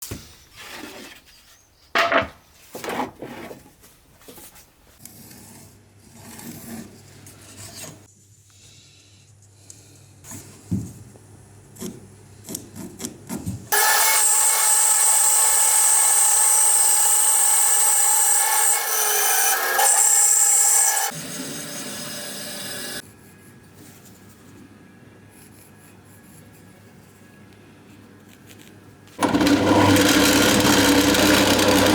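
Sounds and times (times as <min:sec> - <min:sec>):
power tool on wood: 0:13.7 - 0:23.0, 0:29.2 - 0:31.9
hand rasping and scraping wood: 0:29.2 - 0:31.9.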